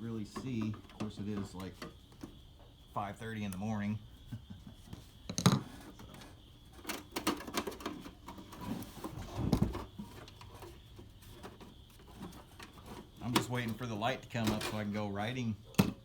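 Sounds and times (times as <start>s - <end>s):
objects clicking and knocking: 5.3s - 14.9s.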